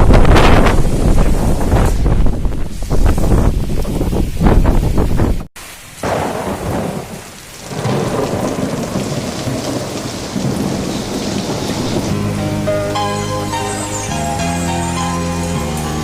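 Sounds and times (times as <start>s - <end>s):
heavy rain pouring: 0.0s - 16.0s
low rumble of thunder: 6.0s - 12.7s.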